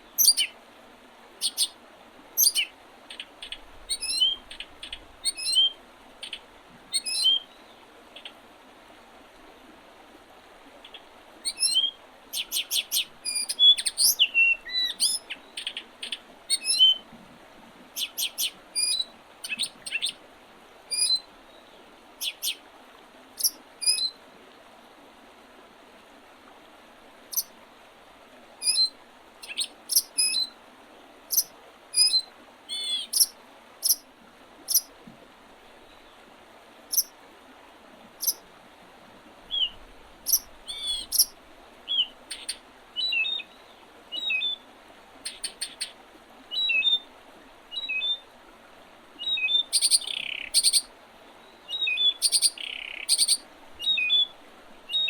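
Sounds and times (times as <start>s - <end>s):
songbirds chirping: 0.0s - 0.6s, 1.4s - 1.8s, 2.4s - 8.4s, 10.7s - 17.1s, 17.9s - 22.7s, 28.6s - 30.6s, 31.3s - 34.0s, 39.4s - 47.1s, 49.2s - 55.0s
steady background hiss: 0.0s - 55.0s.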